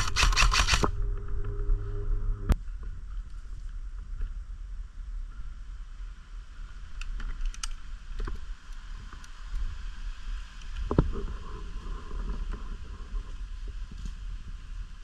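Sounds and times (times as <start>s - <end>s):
sharp clicks: 0.0s - 0.9s
steady low rumble: 0.0s - 15.0s.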